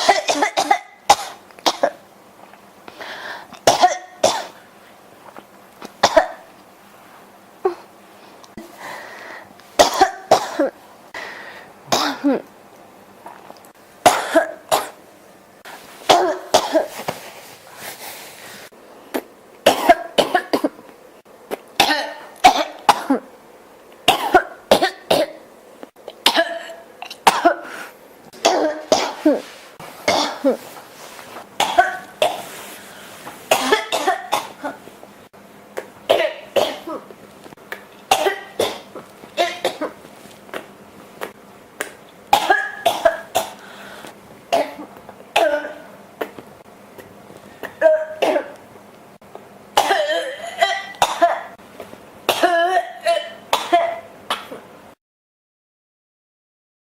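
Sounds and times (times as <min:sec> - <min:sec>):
person coughing: 0:00.0 - 0:02.0, 0:03.6 - 0:04.6, 0:06.0 - 0:06.5, 0:07.6 - 0:07.9, 0:09.8 - 0:10.8, 0:11.9 - 0:12.5, 0:14.1 - 0:15.0, 0:16.1 - 0:17.0, 0:19.1 - 0:20.8, 0:21.8 - 0:23.3, 0:24.1 - 0:25.4, 0:26.1 - 0:30.7, 0:31.6 - 0:32.6, 0:33.5 - 0:34.9, 0:36.1 - 0:37.1, 0:38.1 - 0:40.0, 0:42.3 - 0:43.6, 0:44.5 - 0:46.4, 0:47.6 - 0:48.6, 0:49.8 - 0:51.6, 0:52.3 - 0:54.6.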